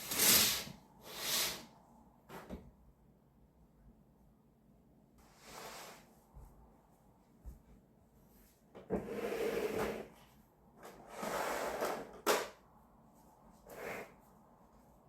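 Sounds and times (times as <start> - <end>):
drawer sliding open and shut: 0.0 - 1.7.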